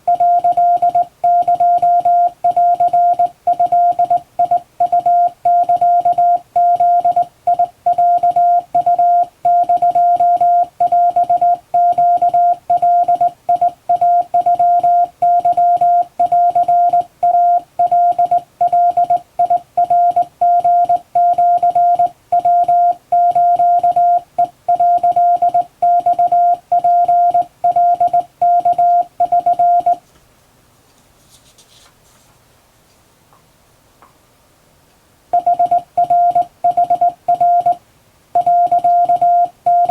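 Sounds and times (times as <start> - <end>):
morse code beeping tone: 0.0 - 30.0, 35.4 - 37.8, 38.4 - 39.9.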